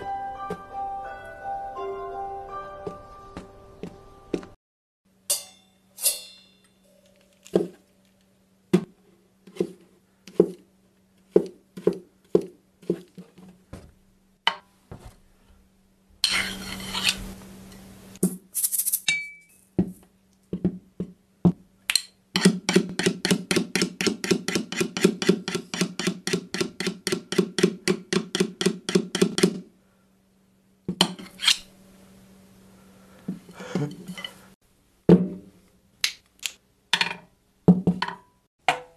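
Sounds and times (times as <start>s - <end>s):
sharp drum hits and clinks: 5.2s - 7.0s.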